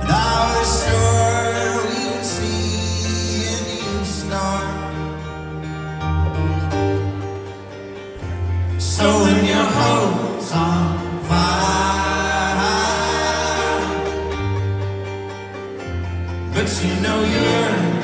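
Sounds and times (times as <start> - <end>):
folk-rock band playing: 0.0 - 18.0
voices singing together: 8.8 - 14.7, 16.5 - 18.0.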